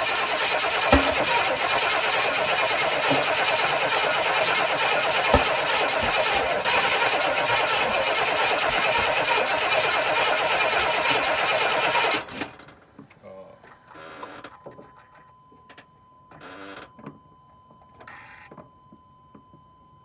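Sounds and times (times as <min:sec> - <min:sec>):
sharp engine knock: 0:00.0 - 0:12.2
car engine turning over: 0:00.0 - 0:12.9.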